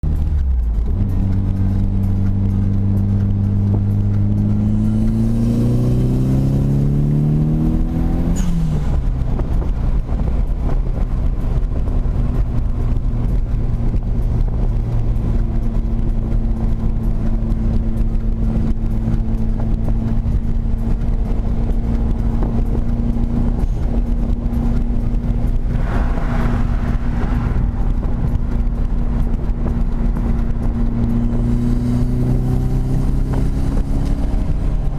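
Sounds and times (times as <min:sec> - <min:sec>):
turbocharged car engine revving: 0:00.0 - 0:34.9
rush of turbo noise: 0:24.6 - 0:29.6.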